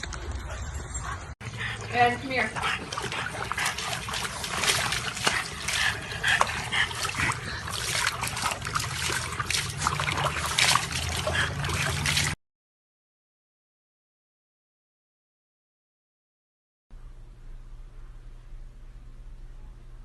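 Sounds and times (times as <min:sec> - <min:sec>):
water splashing and trickling: 0:00.0 - 0:12.4.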